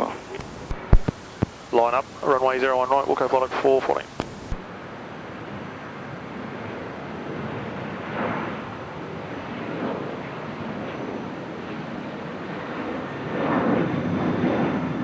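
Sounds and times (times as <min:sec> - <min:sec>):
wind on microphone: 0:00.0 - 0:04.6.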